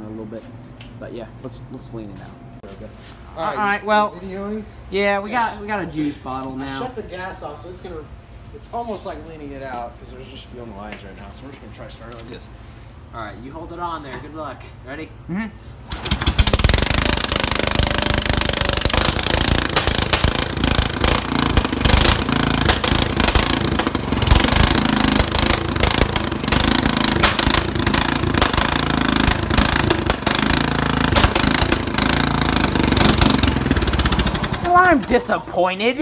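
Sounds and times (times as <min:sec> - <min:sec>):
unmuffled lawnmower engine running: 0:15.9 - 0:35.4.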